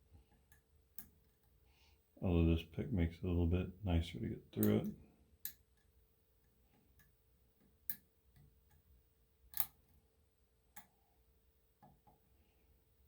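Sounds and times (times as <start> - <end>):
lock pick clicking in lock: 9.5 - 9.8.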